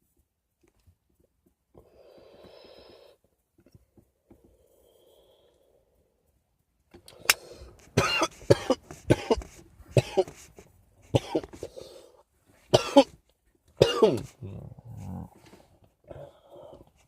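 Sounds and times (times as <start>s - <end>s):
man coughing harshly: 8.0s - 10.4s, 11.2s - 11.6s, 12.7s - 13.2s, 13.8s - 14.6s.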